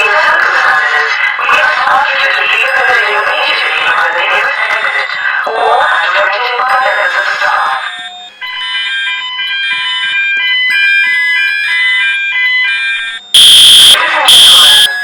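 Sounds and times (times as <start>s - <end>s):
wavering voice-like alarm sound: 0.0s - 8.0s, 13.4s - 15.0s
stepping electronic alarm tones: 2.5s - 15.0s.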